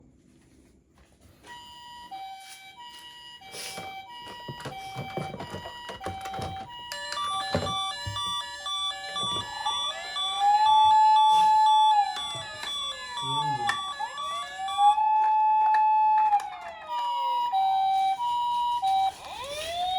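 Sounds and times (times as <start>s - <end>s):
toy ambulance sirens: 1.4s - 19.9s
knocks of toys being handled: 4.2s - 9.9s.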